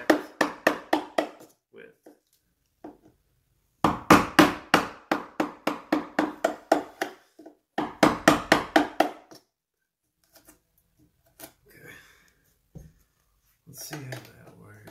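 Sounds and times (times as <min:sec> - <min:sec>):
chisel being struck: 0:00.0 - 0:01.4, 0:07.8 - 0:09.4.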